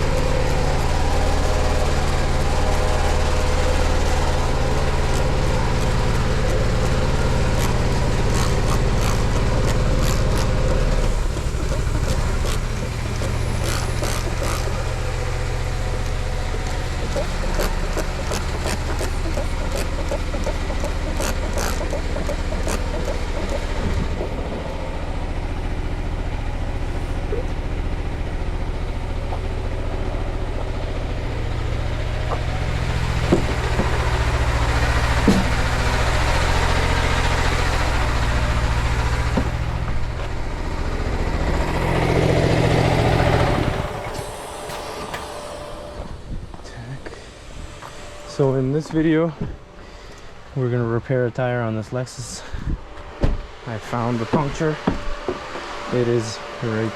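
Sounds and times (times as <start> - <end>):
vehicle engine running: 0.0 - 56.9
sharp clicks: 0.2 - 24.6.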